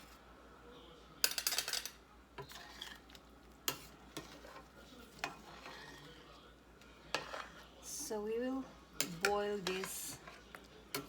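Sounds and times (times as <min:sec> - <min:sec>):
boiling broth: 0:02.2 - 0:07.8
utensil scraping a pot: 0:02.4 - 0:08.0, 0:09.0 - 0:11.0.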